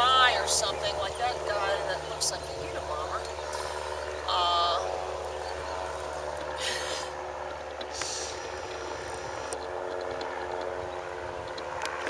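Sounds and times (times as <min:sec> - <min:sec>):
distant motor droning: 0:00.0 - 0:12.0
hissing rustles: 0:07.8 - 0:10.7.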